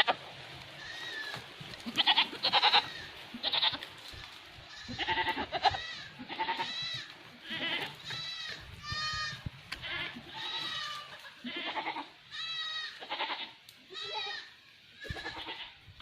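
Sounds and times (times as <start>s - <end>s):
goats bleating: 0.0s - 15.8s.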